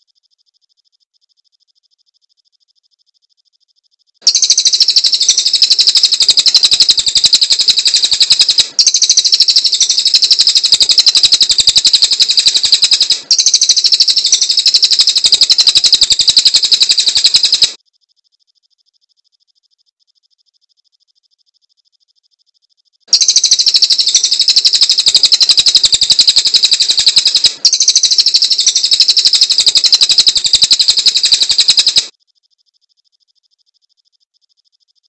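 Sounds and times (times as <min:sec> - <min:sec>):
songbird singing rapid high notes: 0:04.2 - 0:17.8, 0:23.1 - 0:32.1.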